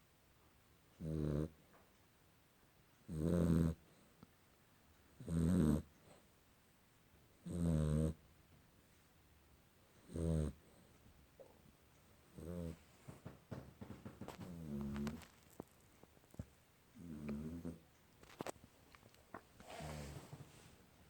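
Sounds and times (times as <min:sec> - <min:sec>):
pet snoring: 0:01.0 - 0:01.6, 0:03.1 - 0:03.9, 0:05.2 - 0:05.9, 0:07.4 - 0:08.2, 0:10.0 - 0:10.6, 0:12.3 - 0:12.9, 0:14.2 - 0:15.3, 0:17.0 - 0:17.8, 0:19.6 - 0:20.6
quiet breathing: 0:03.8 - 0:04.4, 0:05.9 - 0:06.4, 0:09.8 - 0:13.4, 0:19.2 - 0:21.0.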